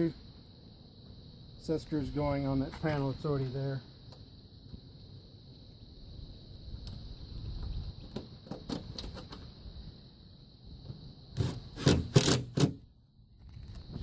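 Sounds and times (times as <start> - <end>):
solar panel being handled: 7.5 - 9.6.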